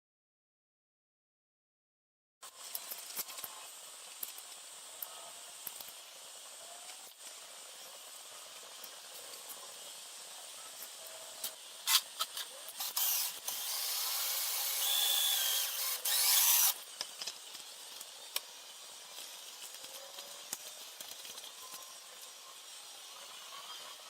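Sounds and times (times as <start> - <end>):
power tool running: 12.8 - 16.8.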